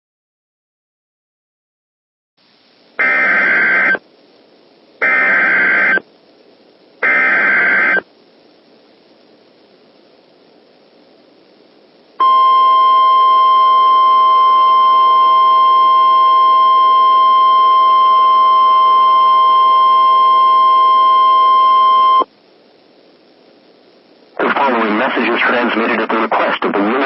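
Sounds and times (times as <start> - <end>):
low radio hiss: 2.4 - 27.0
electronic alarm tone: 3.0 - 4.0, 5.0 - 6.0, 7.0 - 8.0, 12.2 - 22.2.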